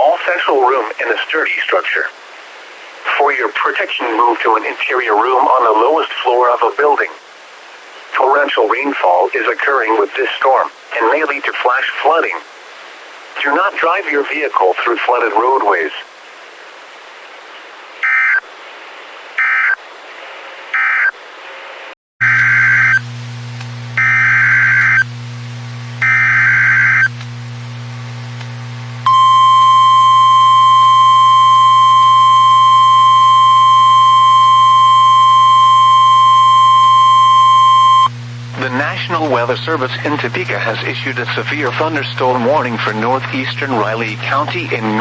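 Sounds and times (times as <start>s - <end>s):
low electrical hum: 0.0s - 45.0s
digital data tone bursts: 24.0s - 25.0s, 26.0s - 27.1s
loud steady alarm tone: 24.0s - 25.1s, 26.0s - 27.1s, 29.1s - 38.1s.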